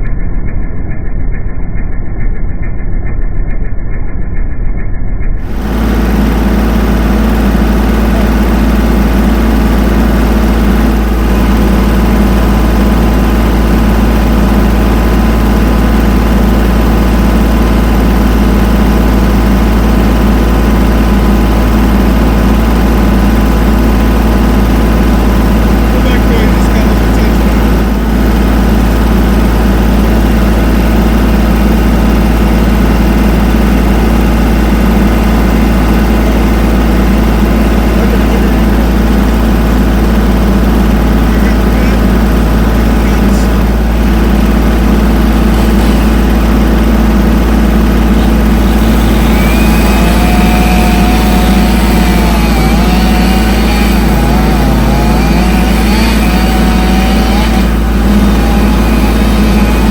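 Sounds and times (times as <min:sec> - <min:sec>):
engine running steadily: 0:00.0 - 0:59.9.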